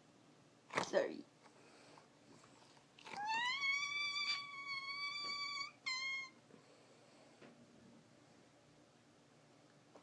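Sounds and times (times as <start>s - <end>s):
high-pitched whimpering whine: 3.1s - 6.4s.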